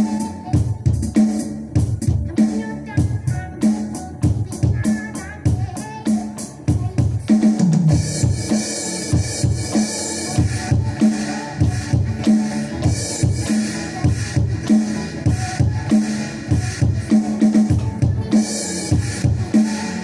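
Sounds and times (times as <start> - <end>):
drum kit beat: 0.0 - 20.0
band playing: 7.6 - 20.0.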